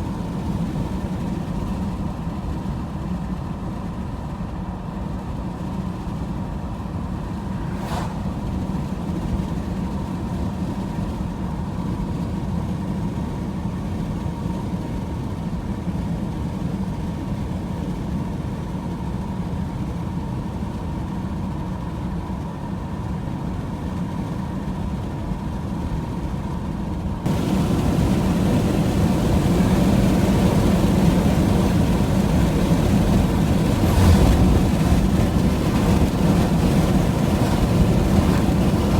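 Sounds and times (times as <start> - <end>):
vehicle road and engine noise: 0.0 - 38.9
faint steady whine: 27.3 - 38.9.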